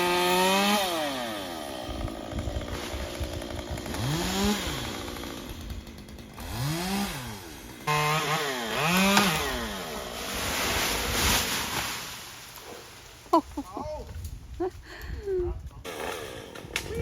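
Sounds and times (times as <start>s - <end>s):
chainsaw engine revving: 0.0s - 10.6s, 15.9s - 16.8s.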